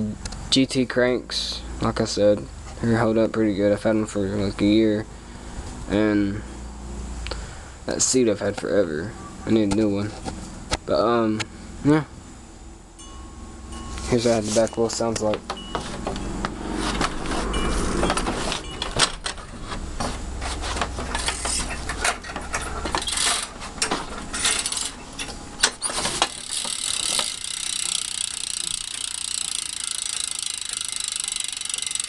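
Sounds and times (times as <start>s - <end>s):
bicycle freewheel hub ratcheting: 22.9s - 23.5s, 24.3s - 25.0s, 25.8s - 32.0s.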